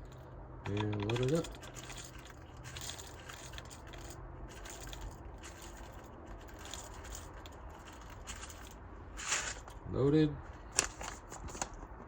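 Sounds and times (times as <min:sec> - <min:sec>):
salt crystals rustling: 0:01.6 - 0:09.8.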